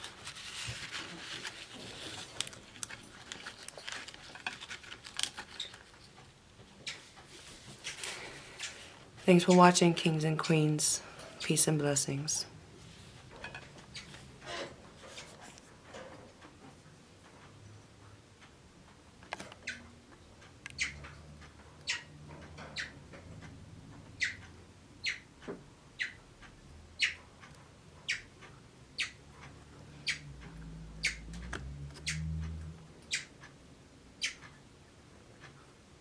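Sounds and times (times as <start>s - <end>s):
bird chirping: 20.8s - 21.0s, 22.8s - 23.0s, 30.0s - 30.3s.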